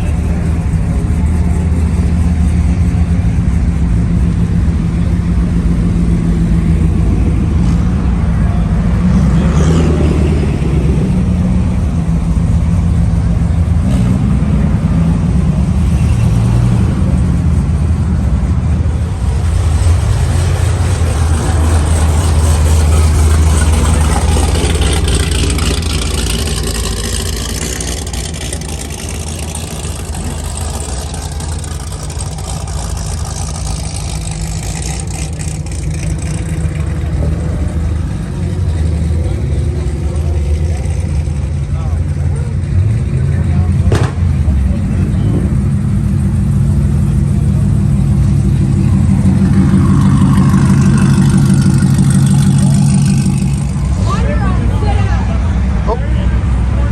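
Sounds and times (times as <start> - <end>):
car engine humming: 0.0 - 56.9.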